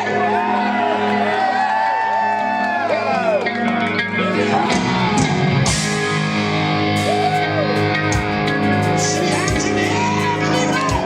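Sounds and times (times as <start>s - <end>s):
heavy metal band playing: 2.5s - 11.0s.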